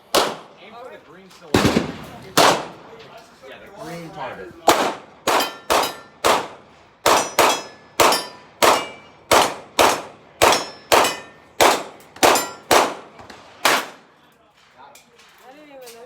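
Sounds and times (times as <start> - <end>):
small-calibre gunshots: 0.0 - 0.7, 1.5 - 3.0, 4.6 - 14.2.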